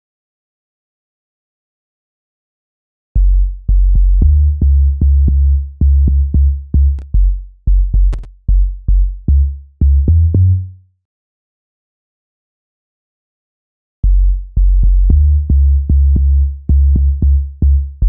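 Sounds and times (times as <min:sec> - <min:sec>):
deep log drum bass notes: 0:03.2 - 0:10.6, 0:14.0 - 0:18.0.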